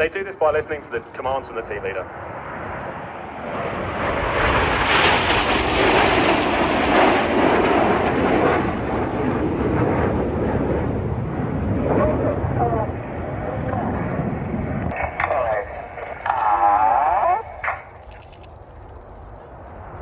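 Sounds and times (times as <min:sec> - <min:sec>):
jets flying past: 0:00.0 - 0:20.0.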